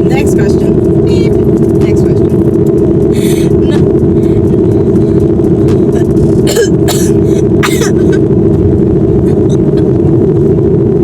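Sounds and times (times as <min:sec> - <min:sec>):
car cabin drone: 0:00.0 - 0:11.0
coughs or throat-clearing: 0:05.9 - 0:08.3.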